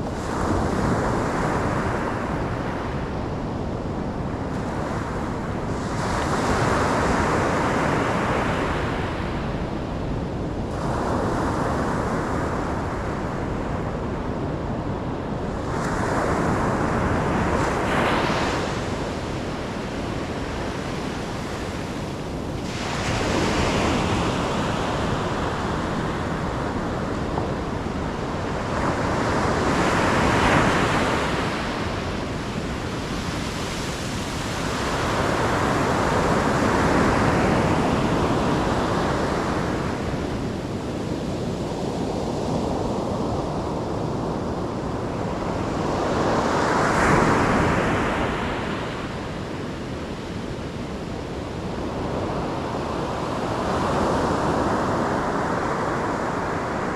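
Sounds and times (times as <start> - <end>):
ocean waves breaking: 15.6 - 56.9.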